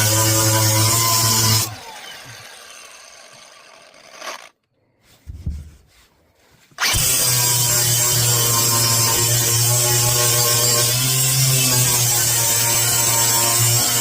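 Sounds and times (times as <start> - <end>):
electric power tool running: 1.5 - 4.6.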